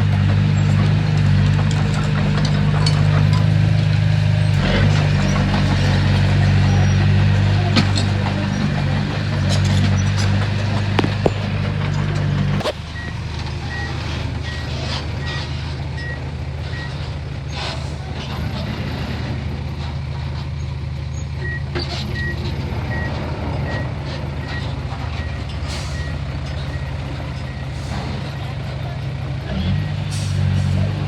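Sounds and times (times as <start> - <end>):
diesel engine running: 0.0 - 31.0
metal clanks: 0.6 - 13.0.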